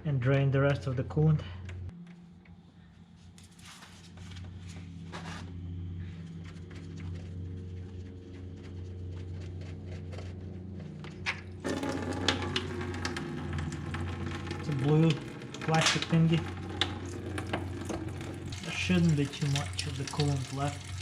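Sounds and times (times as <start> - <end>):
steady low hum: 0.0 - 21.0
coolant draining with hissing splash: 11.6 - 21.0.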